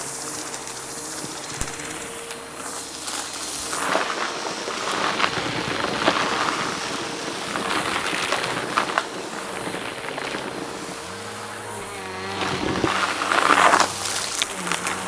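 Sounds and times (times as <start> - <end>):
debris crackling in vacuum: 0.0 - 15.0
vacuum cleaner whirring: 0.0 - 15.0.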